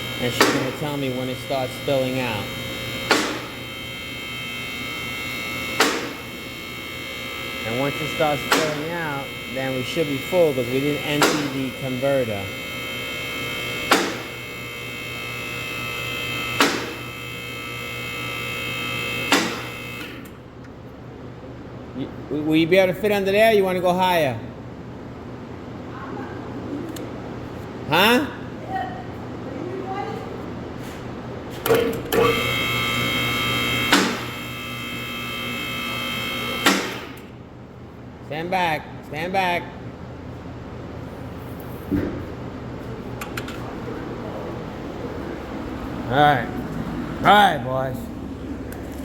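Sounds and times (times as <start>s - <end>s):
lift clunk: 0.0s - 3.8s, 5.6s - 6.5s, 7.4s - 9.3s, 11.1s - 11.8s, 13.8s - 14.4s, 16.6s - 17.1s
hydraulic pump motor humming: 0.0s - 20.9s, 31.6s - 37.8s, 40.5s - 49.0s
sharp click: 3.1s - 3.5s, 11.2s - 11.6s, 13.9s - 14.3s, 36.6s - 37.1s.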